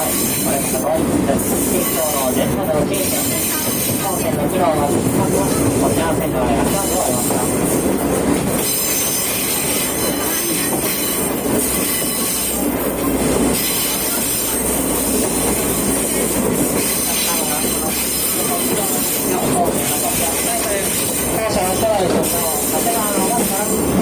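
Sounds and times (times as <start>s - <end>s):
train carriages running: 0.0s - 24.0s
wheels squealing on rails: 0.0s - 24.0s.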